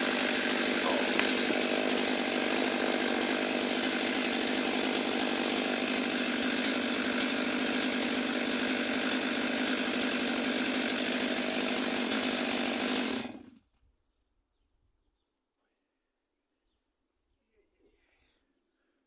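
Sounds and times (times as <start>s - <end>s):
chainsaw ripping wood: 0.0s - 13.6s.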